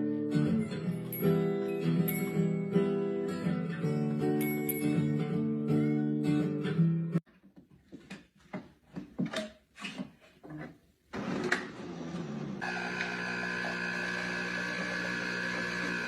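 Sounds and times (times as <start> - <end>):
guitar music: 0.0 - 7.2.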